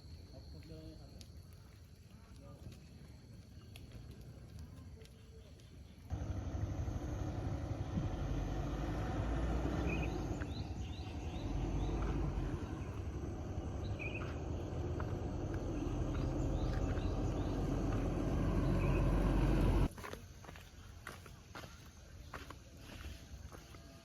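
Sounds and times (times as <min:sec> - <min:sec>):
low rumbling noise: 0:06.1 - 0:19.9.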